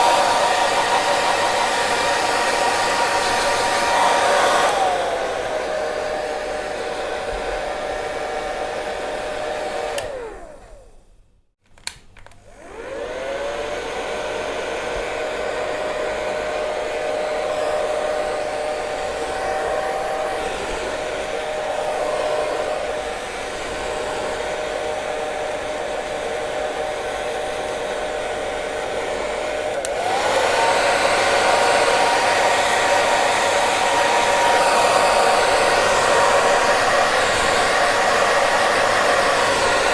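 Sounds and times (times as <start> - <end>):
hair dryer blowing: 0.0 - 11.1, 11.8 - 39.9
click: 10.0 - 10.2, 11.6 - 12.4.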